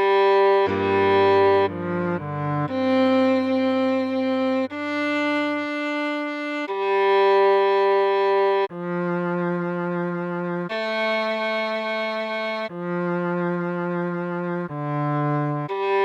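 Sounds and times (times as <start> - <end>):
slow viola melody: 0.0 - 16.0.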